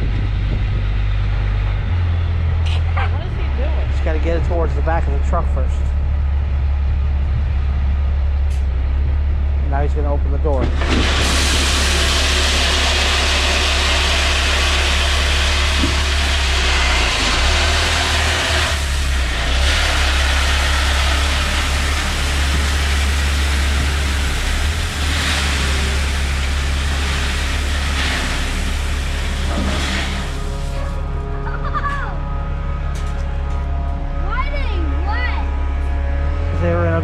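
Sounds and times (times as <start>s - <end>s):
truck engine running under load: 0.0s - 37.0s
gravel sliding out: 10.5s - 31.1s.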